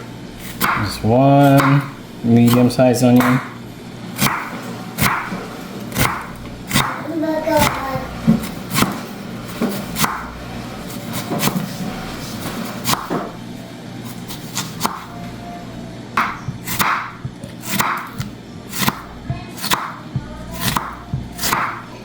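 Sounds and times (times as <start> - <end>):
knife chopping on cutting board: 0.4 - 3.6, 4.2 - 7.0, 7.6 - 13.4, 14.1 - 15.1, 16.2 - 22.0
background music: 13.4 - 22.0.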